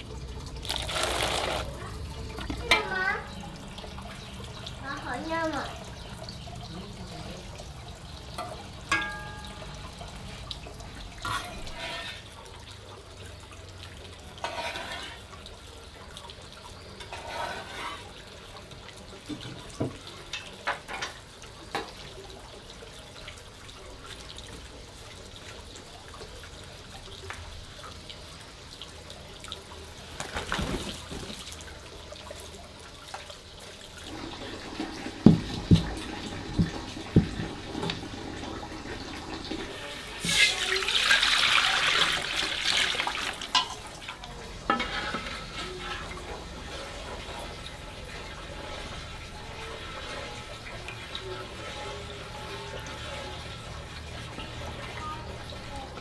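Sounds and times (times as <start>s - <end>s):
water splashing and running: 0.0s - 56.0s.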